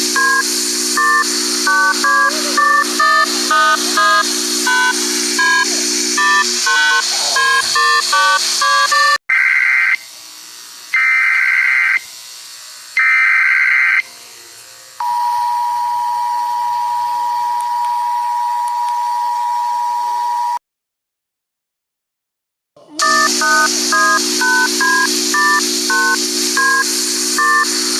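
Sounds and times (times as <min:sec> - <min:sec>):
two-tone attention signal: 0:00.0 - 0:09.2, 0:23.0 - 0:27.9
screeching data bursts: 0:00.0 - 0:10.1, 0:11.0 - 0:12.1, 0:13.0 - 0:14.0, 0:23.0 - 0:27.9
electronic beeps: 0:00.2 - 0:09.2, 0:23.0 - 0:27.8.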